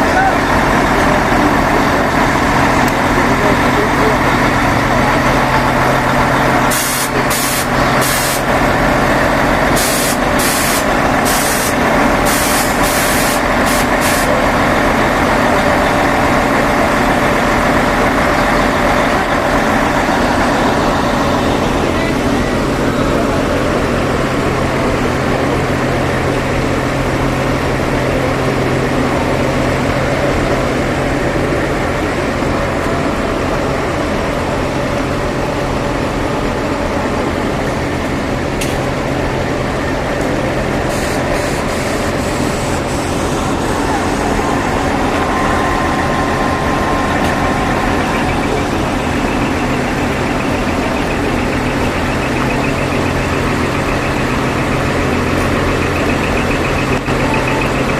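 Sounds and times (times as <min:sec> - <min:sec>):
truck diesel engines running: 0:00.0 - 0:57.9
short air hisses: 0:06.7 - 0:08.5, 0:09.8 - 0:14.4, 0:40.9 - 0:43.2.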